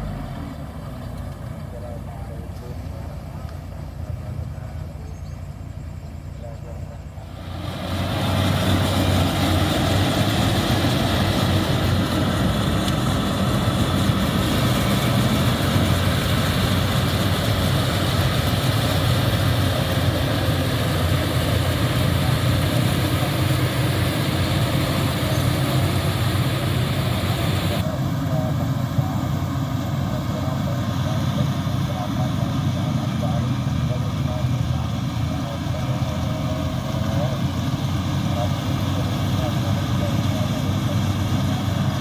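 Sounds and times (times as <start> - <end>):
continuous hiss: 0.0 - 9.3
combine harvester engine hum: 0.0 - 42.0.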